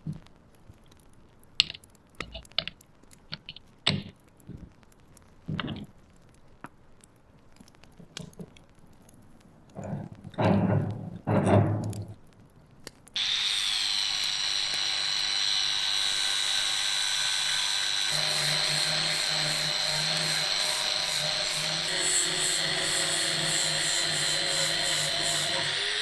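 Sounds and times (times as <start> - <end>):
power tool whining: 13.2 - 26.0.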